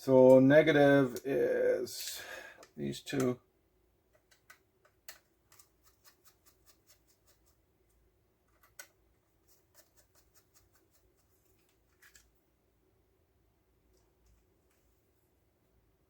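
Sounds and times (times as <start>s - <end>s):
small clicks of wiring work: 4.1s - 7.4s, 8.5s - 9.0s, 11.5s - 12.4s.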